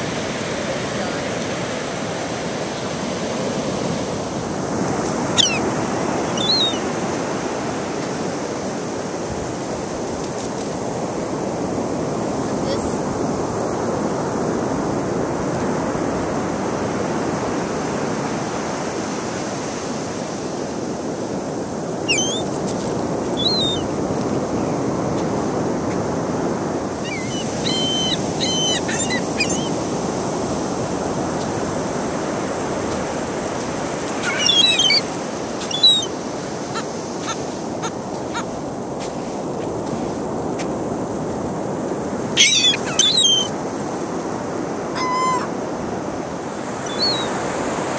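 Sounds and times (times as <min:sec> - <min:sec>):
ocean surf washing: 0:00.0 - 0:47.9
seagulls calling: 0:05.3 - 0:07.0, 0:22.0 - 0:22.5, 0:23.4 - 0:23.9, 0:27.0 - 0:29.9, 0:34.1 - 0:38.6, 0:42.3 - 0:43.6, 0:45.0 - 0:45.5, 0:46.8 - 0:47.4.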